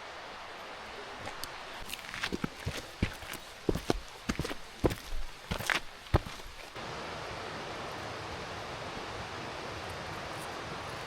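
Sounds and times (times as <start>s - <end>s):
footsteps on a trail: 1.1s - 6.8s.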